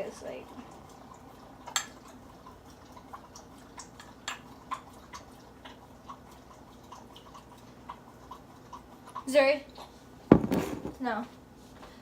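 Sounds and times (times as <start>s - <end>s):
oil dripping into a cup: 0.0s - 9.8s.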